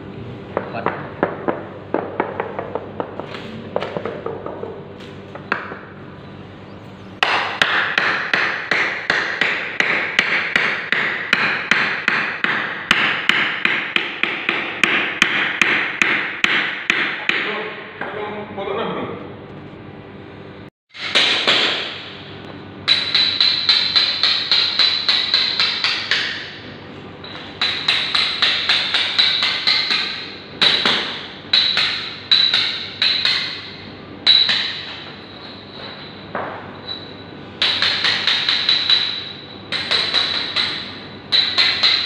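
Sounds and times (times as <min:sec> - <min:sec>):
hammer striking ceramic tiles: 0:22.9 - 0:26.6, 0:27.2 - 0:42.0.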